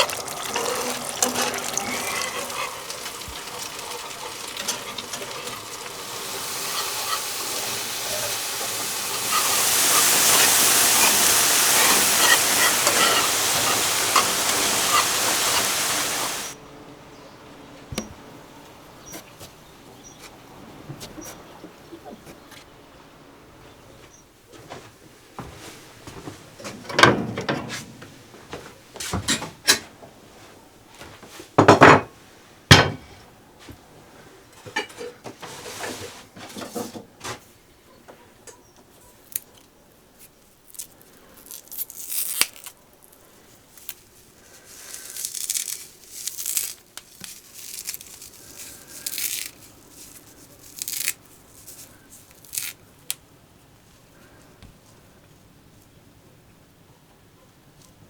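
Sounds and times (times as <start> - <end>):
kitchenware knocking and clattering: 26.6 - 28.2, 29.2 - 29.9, 31.6 - 33.1
tearing and rustling: 39.1 - 53.2.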